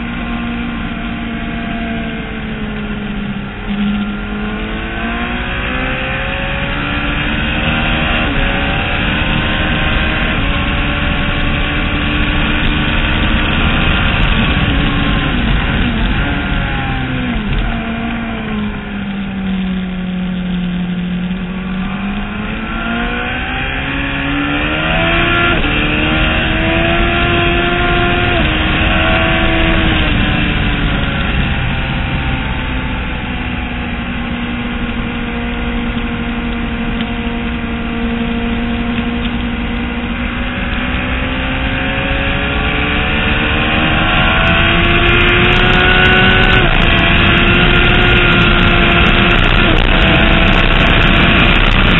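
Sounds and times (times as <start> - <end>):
motorcycle engine revving: 0.0 - 51.9
wind noise: 0.0 - 51.9.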